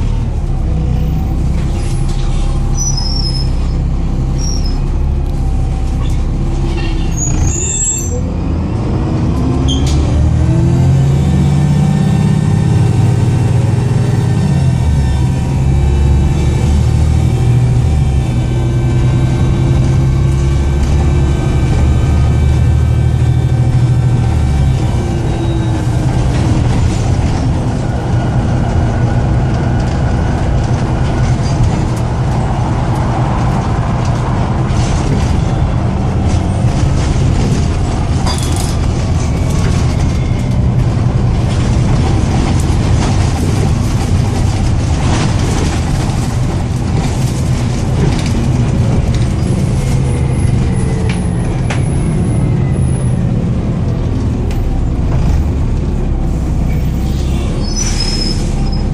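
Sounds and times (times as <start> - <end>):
bus diesel engine running: 0.0 - 58.9
rattles and clicks: 25.9 - 52.0.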